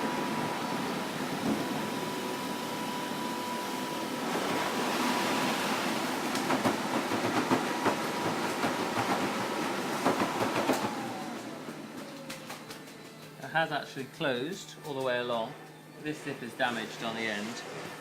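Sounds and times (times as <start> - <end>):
electric air blower running: 0.0 - 13.3.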